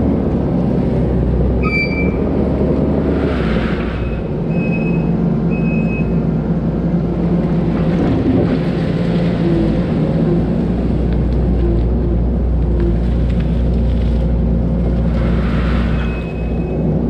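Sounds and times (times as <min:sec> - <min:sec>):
diesel engine running under load: 0:00.0 - 0:17.0.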